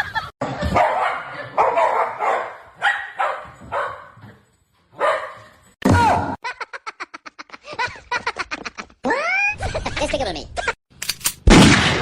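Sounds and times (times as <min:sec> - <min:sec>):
dog barking: 0:00.7 - 0:04.4, 0:05.0 - 0:05.5.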